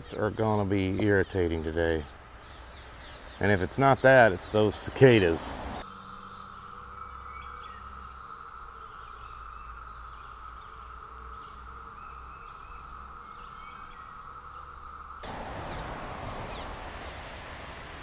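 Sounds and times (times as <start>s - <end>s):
cicadas droning: 0.0s - 18.0s
faint bird chirps: 5.8s - 17.9s.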